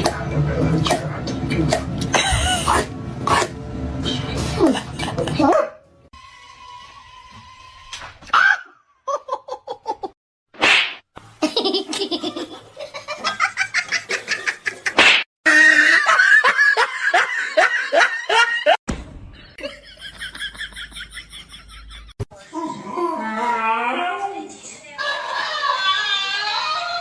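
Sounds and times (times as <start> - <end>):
people laughing: 4.4 - 5.5, 11.4 - 18.8, 19.6 - 22.2, 25.0 - 27.0.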